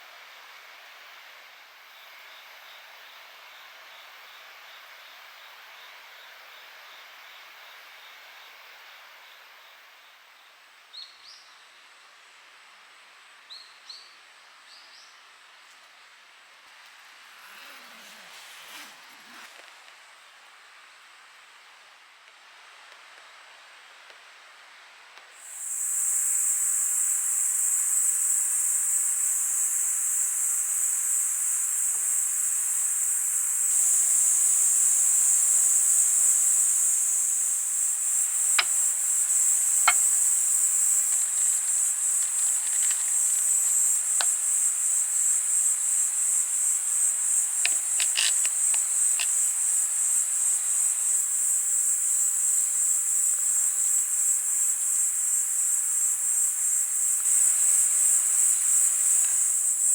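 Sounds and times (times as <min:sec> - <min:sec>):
insects chirping: 0:25.4 - 0:59.9
sharp clicks: 0:47.6 - 0:49.4.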